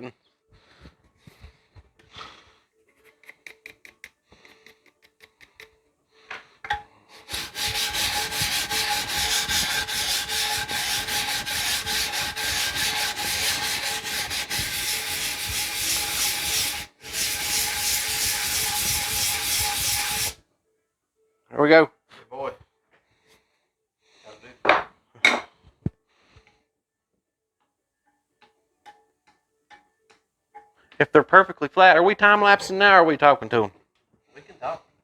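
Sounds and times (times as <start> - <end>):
belt sanding rasp: 7.1 - 20.4.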